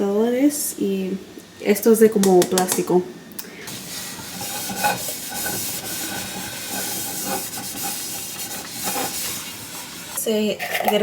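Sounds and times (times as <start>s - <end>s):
water heating in a pot hissing: 3.6s - 10.2s.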